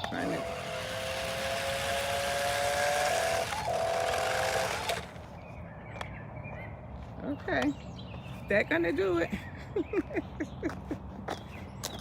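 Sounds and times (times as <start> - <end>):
electric motor whine: 0.0 - 5.2.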